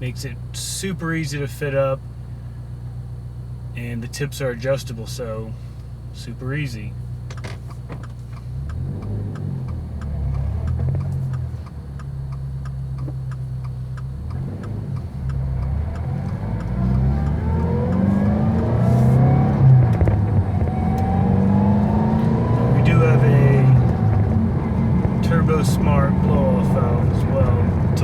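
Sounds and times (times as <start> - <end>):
turbocharged car engine revving: 6.0 - 28.0.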